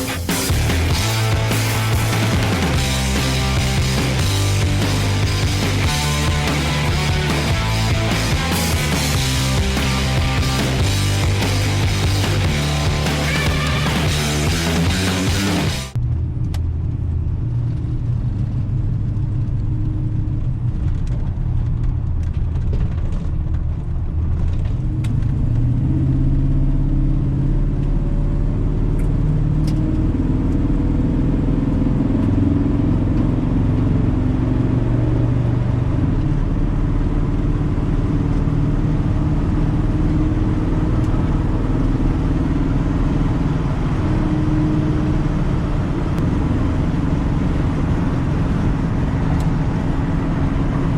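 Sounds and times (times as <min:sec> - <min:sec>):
truck engine revving: 0:00.0 - 0:16.0, 0:24.9 - 0:50.9.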